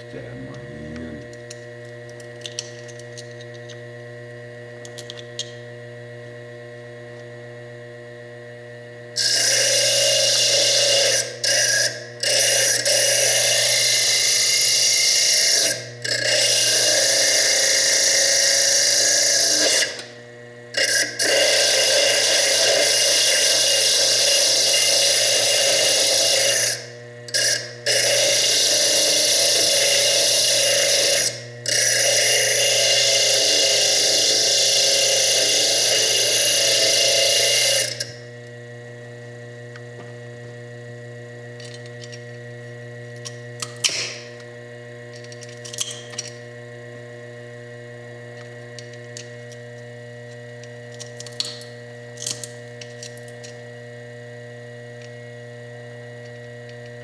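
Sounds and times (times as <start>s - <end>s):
lathe motor hum: 9.1s - 38.7s
disc grinding stone: 9.2s - 20.2s, 20.8s - 38.3s.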